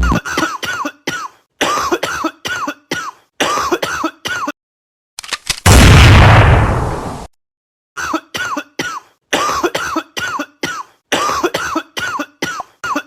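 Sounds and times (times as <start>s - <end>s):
distorted cough blast: 0.0s - 2.2s
looping chopped cough sample: 0.0s - 4.5s, 8.0s - 13.0s.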